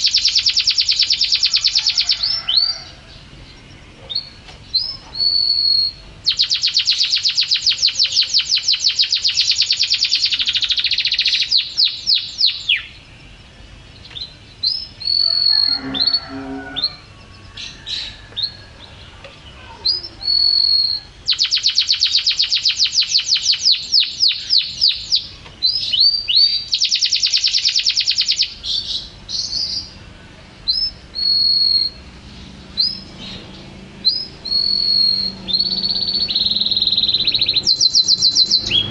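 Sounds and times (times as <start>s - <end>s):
canary singing trills: 0.0s - 38.9s.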